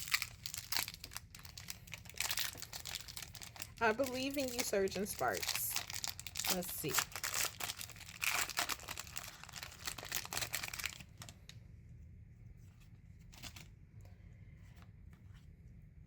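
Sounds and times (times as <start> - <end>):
foil wrapper tearing and crinkling: 0.0 - 11.4.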